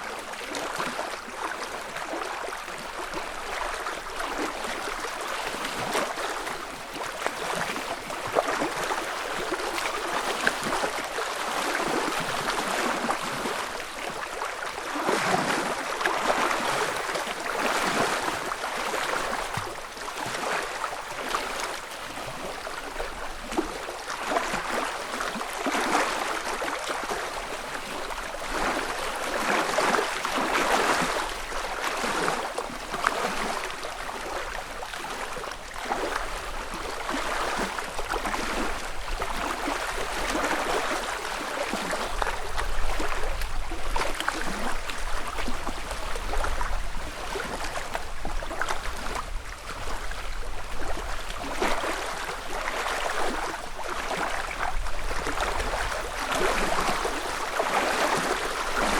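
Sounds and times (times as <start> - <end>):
small waves lapping on shore: 0.0 - 58.9.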